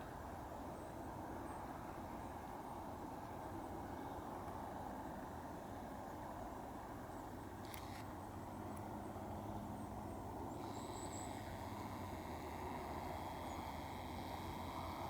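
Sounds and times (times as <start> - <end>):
low outdoor background rumble: 5.0 - 15.0.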